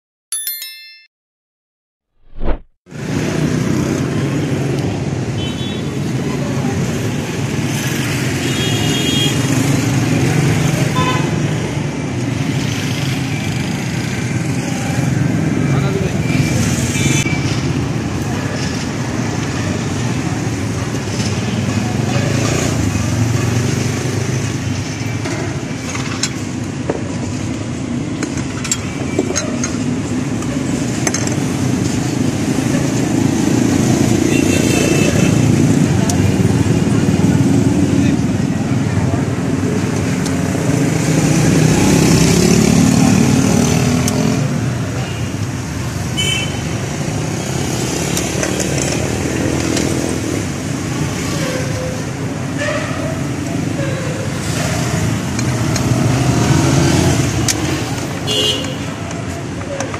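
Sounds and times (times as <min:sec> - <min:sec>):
brief high tone: 0:00.3 - 0:01.1
low rumble of street traffic: 0:02.9 - 0:59.9.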